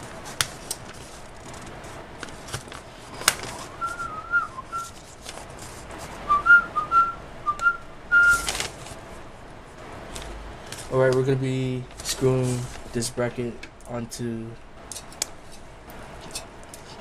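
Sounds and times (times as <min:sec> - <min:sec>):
person whistling a tune: 0:03.6 - 0:04.9, 0:06.3 - 0:08.5.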